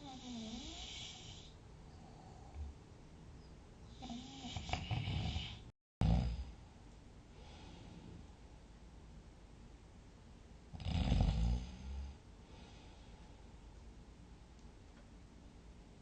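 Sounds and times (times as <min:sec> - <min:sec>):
person snoring: 0:00.0 - 0:02.6, 0:03.9 - 0:06.5, 0:10.8 - 0:12.2
quiet sleep breathing: 0:00.0 - 0:02.9, 0:03.9 - 0:08.5, 0:11.1 - 0:13.8.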